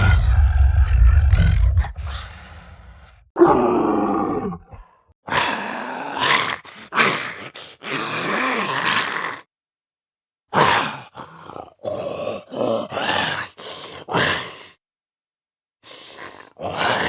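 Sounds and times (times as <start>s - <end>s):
monster groaning: 0.0s - 5.0s.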